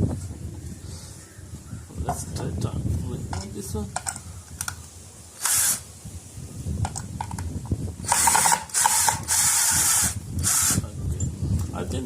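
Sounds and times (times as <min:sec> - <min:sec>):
screwdriver ratchet clicking: 0:08.1 - 0:10.8.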